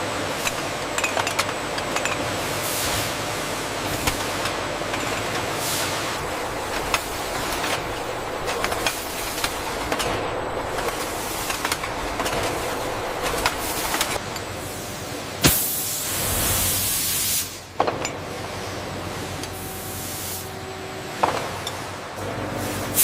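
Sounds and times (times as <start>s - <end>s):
factory machinery running: 0.0s - 23.0s
loud hiss: 15.4s - 17.7s.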